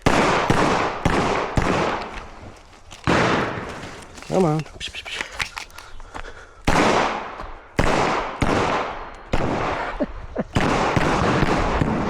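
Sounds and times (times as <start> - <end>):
pistol shots: 0.0 - 2.4, 3.1 - 3.8, 6.7 - 12.0.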